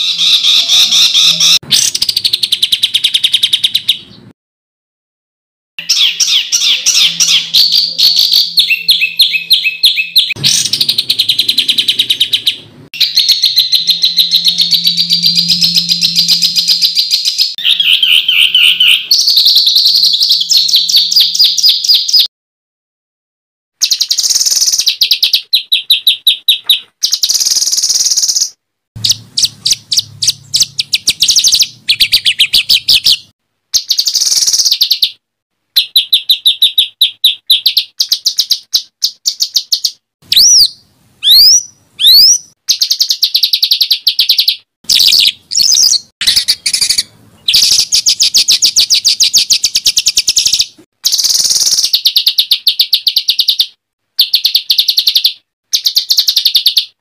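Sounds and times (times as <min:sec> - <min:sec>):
sharp swooping whistles: 0:06.3 - 0:19.0
songbird rattling trills: 0:08.1 - 0:19.7, 0:29.0 - 0:33.3.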